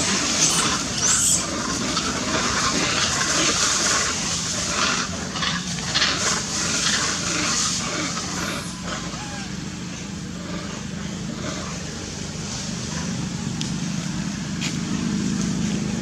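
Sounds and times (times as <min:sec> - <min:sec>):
young monkey squealing: 0:00.0 - 0:01.9, 0:08.1 - 0:09.9
steady rushing noise: 0:00.0 - 0:16.0.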